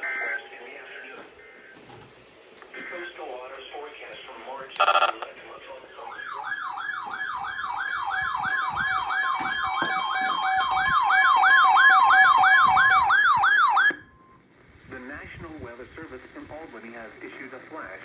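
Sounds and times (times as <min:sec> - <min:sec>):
electronic yelp siren: 0:04.8 - 0:05.3, 0:05.9 - 0:14.3.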